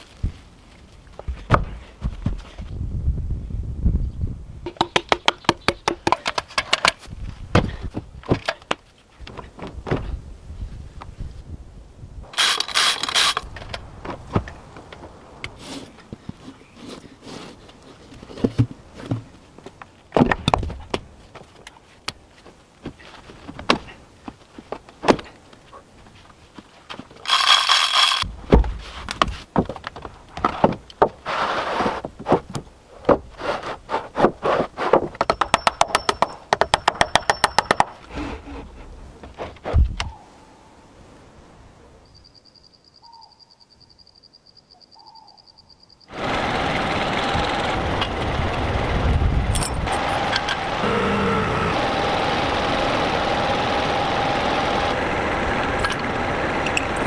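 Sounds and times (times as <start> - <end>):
knocks thunks and scrapes on wood: 1.2 - 2.7, 9.2 - 10.2, 18.2 - 19.4, 28.3 - 35.3
power tool whirring: 12.3 - 13.5, 27.3 - 28.2, 49.8 - 57.0
fast run of clicks: 12.3 - 13.9, 27.2 - 28.3, 46.1 - 57.0.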